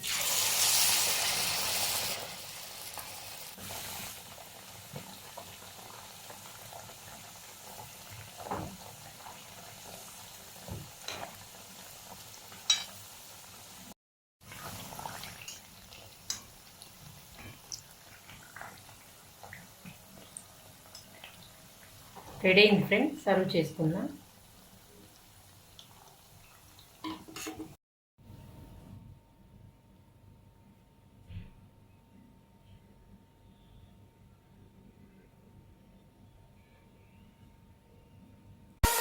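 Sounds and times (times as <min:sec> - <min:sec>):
food deep-frying in hot oil: 0:00.0 - 0:27.8.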